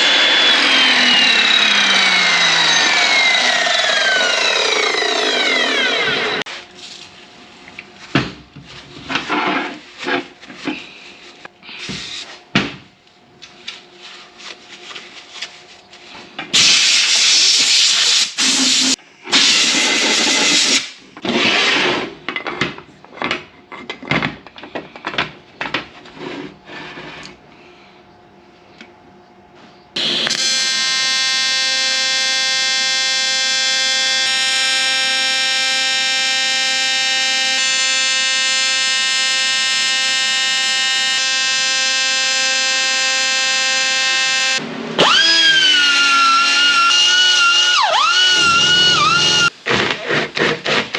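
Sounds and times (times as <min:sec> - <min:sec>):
power tool bursts: 0:16.6 - 0:22.0, 0:30.0 - 0:32.6, 0:44.0 - 0:49.5
welding arc buzzing: 0:30.0 - 0:49.5
cutting wheel hissing: 0:47.8 - 0:49.5.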